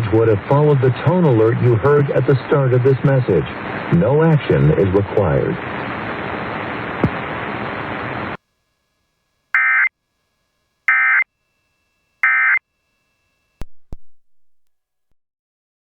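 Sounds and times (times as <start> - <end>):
steady hiss: 0.0 - 8.4
digital data tone bursts: 9.6 - 9.9, 10.9 - 11.2, 12.2 - 12.6.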